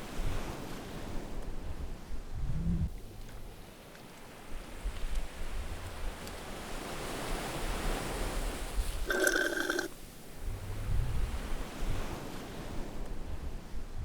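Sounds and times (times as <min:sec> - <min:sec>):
rushing wind-like noise: 0:00.0 - 0:03.6, 0:10.0 - 0:14.0
low rumbles: 0:01.4 - 0:03.1, 0:10.4 - 0:11.6.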